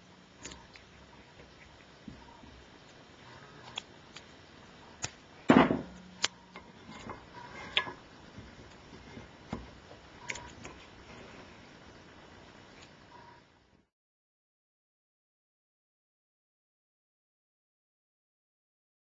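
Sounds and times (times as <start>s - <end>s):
loud clunk: 5.5s - 6.0s.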